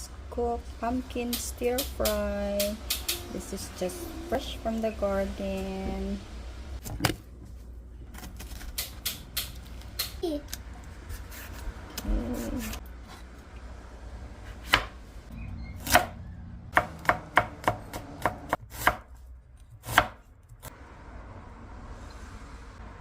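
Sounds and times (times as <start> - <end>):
knife chopping on cutting board: 14.4 - 15.0, 16.8 - 19.2, 19.8 - 20.3.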